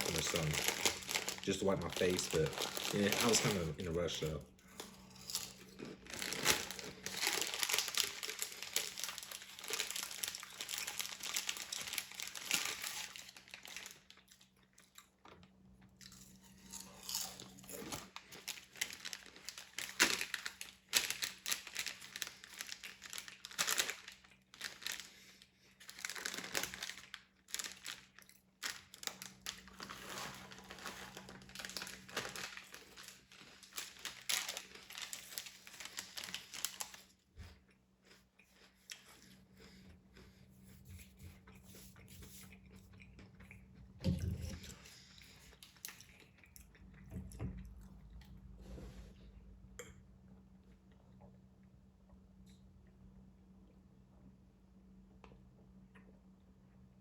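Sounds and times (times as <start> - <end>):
paper wrapper crinkling: 0.0 - 4.4, 5.2 - 14.3, 17.8 - 37.1.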